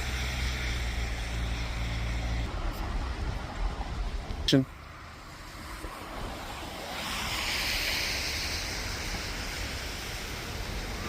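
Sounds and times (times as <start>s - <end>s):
hiss: 0.0s - 2.5s, 5.2s - 11.0s
wind rumbling on microphone: 0.0s - 11.0s.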